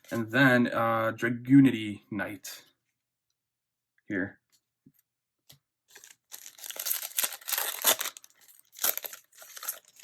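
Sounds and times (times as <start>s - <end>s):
foil pack tearing and crinkling: 5.9s - 10.0s.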